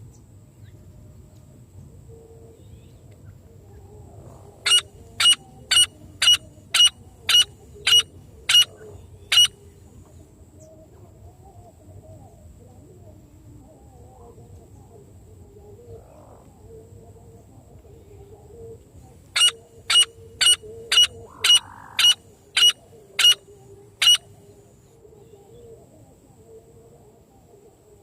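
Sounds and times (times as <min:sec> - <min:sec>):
bird calling sharp loud notes: 0:04.6 - 0:09.6, 0:19.4 - 0:23.4, 0:24.0 - 0:24.3.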